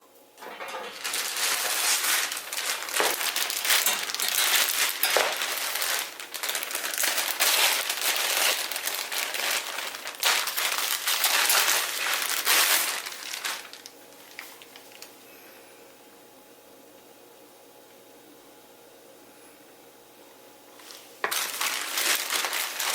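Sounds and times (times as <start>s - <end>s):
packaging crinkling and rustling: 0.4s - 15.2s, 20.8s - 22.9s.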